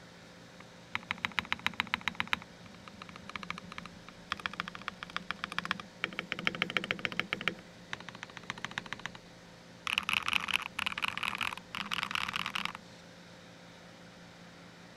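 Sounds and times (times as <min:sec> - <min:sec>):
faint steady hum: 0:00.0 - 0:14.9
fast typing on mechanical keyboard: 0:00.9 - 0:09.2, 0:09.9 - 0:12.8.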